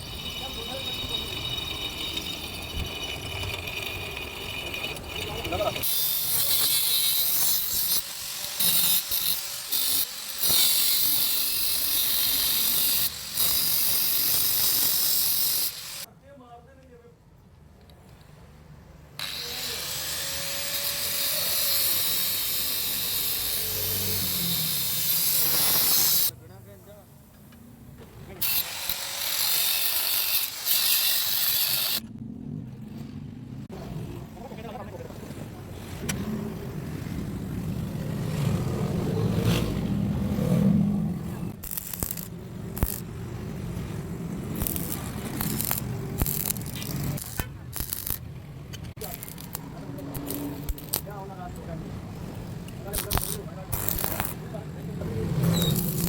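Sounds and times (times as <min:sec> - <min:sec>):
arc welding sizzling hiss: 0:05.8 - 0:16.1, 0:19.3 - 0:27.0, 0:28.4 - 0:32.0, 0:41.5 - 0:43.1, 0:44.6 - 0:48.2, 0:48.9 - 0:51.1, 0:52.4 - 0:54.4
sharp metal clicks: 0:41.5 - 0:43.1, 0:44.6 - 0:54.4.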